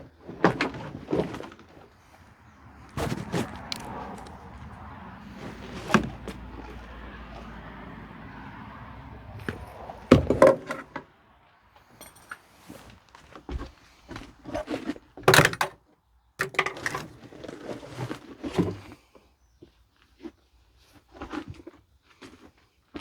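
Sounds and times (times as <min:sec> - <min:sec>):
rustling: 0:00.0 - 0:07.6
knocks and thumps: 0:09.4 - 0:11.1.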